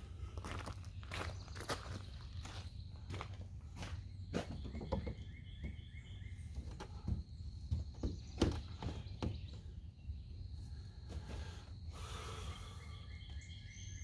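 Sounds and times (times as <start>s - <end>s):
insect drone: 10.0s - 14.0s.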